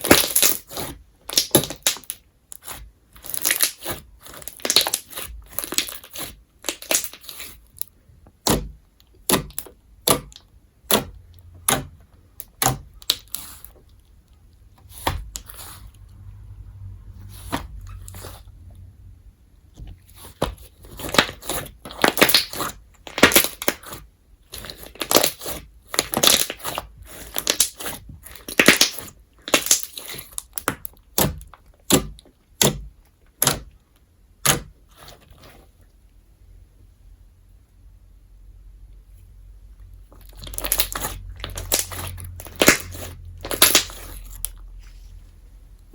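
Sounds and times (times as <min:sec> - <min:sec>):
crunch slime crackling: 0:00.0 - 0:16.0, 0:20.1 - 0:32.8, 0:40.1 - 0:44.8.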